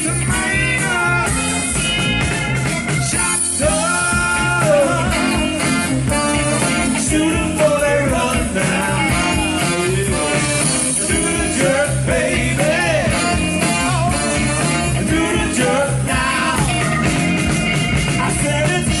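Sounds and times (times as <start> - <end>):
saxophone lead line: 0.0 - 19.0
soul band playing: 0.0 - 19.0.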